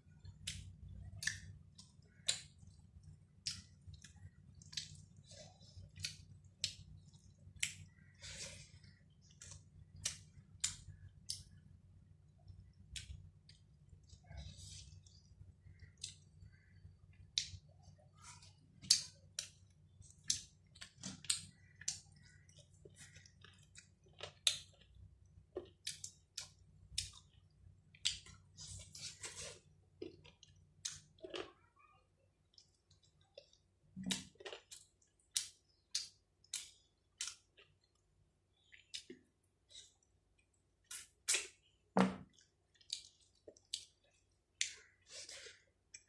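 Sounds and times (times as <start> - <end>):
wet chewing and lip-smacking: 0.1 - 17.8, 18.8 - 31.6, 42.3 - 46.0.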